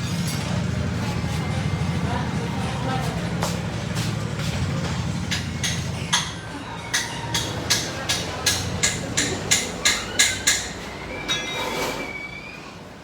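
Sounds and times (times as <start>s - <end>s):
high squeal: 9.5s - 12.9s.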